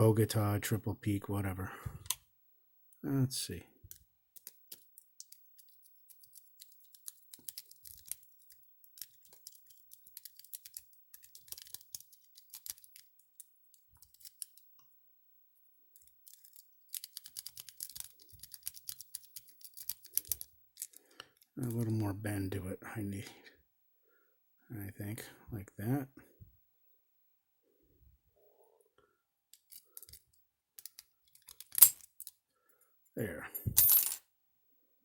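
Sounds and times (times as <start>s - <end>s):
paper clip raking padlock pins: 4.4s - 14.7s, 16.0s - 21.8s, 29.6s - 32.4s.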